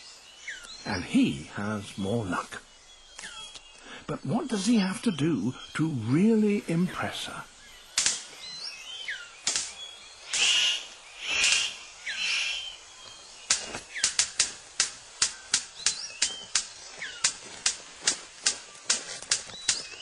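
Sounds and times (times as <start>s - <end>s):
harsh buzzing bird calls: 0.0s - 20.0s
sharp bird clicks: 0.5s - 0.9s, 3.0s - 3.9s, 7.8s - 20.0s.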